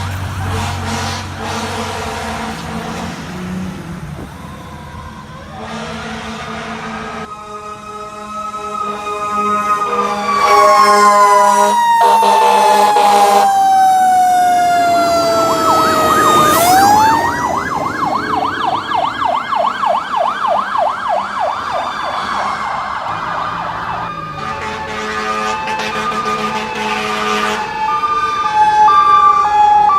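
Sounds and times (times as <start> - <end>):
fire truck air horns: 0.0 - 3.8, 5.4 - 19.3, 22.0 - 29.9
siren wailing and yelping: 8.4 - 26.3, 27.6 - 29.9.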